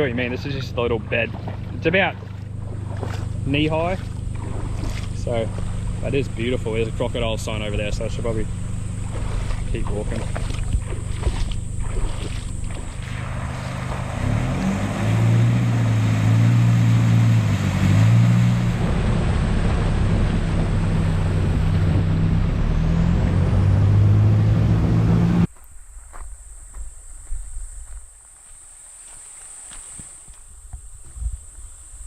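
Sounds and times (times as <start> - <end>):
road and wind noise: 0.0 - 28.1
bush ambience: 0.0 - 32.0
truck engine under load: 0.8 - 25.5.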